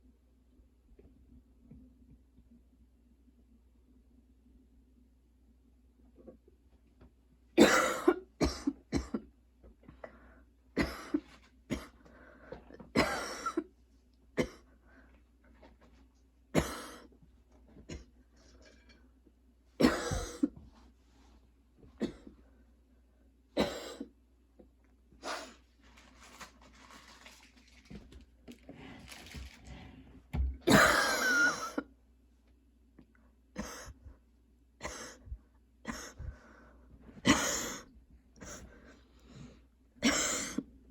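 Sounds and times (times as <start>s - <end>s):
woman coughing: 7.6s - 9.3s, 10.8s - 12.0s, 13.0s - 13.6s, 16.6s - 17.1s, 19.8s - 20.6s, 23.6s - 24.1s, 30.6s - 31.9s, 37.2s - 37.9s, 40.0s - 40.7s.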